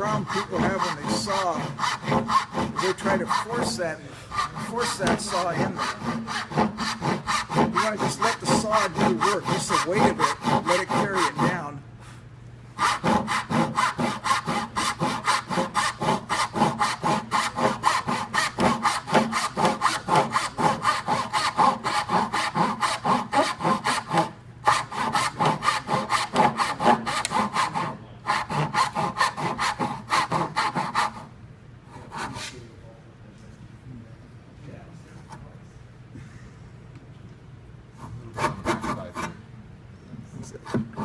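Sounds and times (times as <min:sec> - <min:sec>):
hand saw cutting wood: 0:00.0 - 0:11.7, 0:12.8 - 0:31.3, 0:31.9 - 0:32.6, 0:38.3 - 0:39.4, 0:40.6 - 0:41.0.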